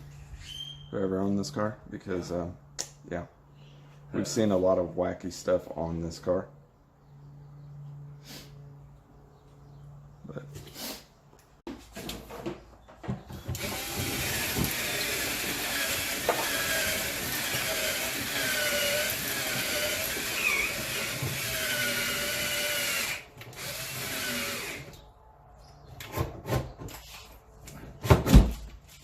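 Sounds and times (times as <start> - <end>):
power drill running under load: 13.5 - 25.0.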